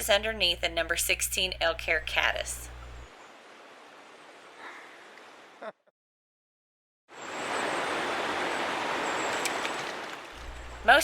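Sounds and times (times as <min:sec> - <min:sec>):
stream rushing: 0:03.1 - 0:05.6, 0:07.2 - 0:10.8.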